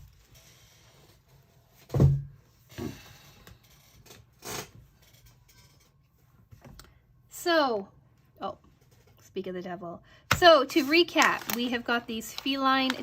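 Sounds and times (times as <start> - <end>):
thump: 1.9 - 2.9.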